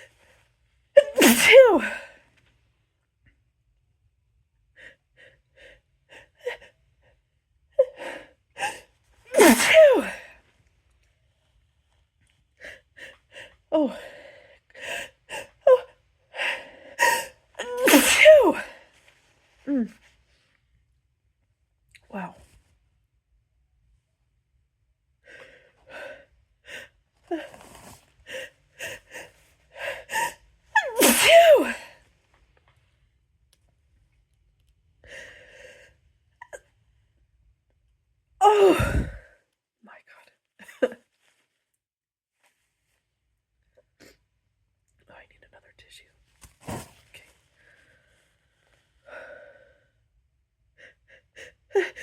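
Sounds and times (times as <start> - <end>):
person sneezing loudly: 1.0 - 2.0, 9.3 - 10.2, 17.6 - 18.8, 30.8 - 32.0, 38.4 - 39.2
person gasping before sneeze: 38.4 - 39.3.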